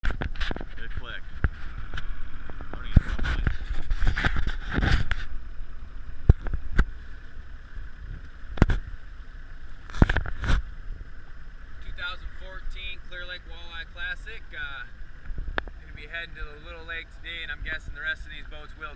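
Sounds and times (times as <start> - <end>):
wind on microphone: 0.0 - 9.0, 15.0 - 18.9
outboard boat engines idling: 0.1 - 18.9.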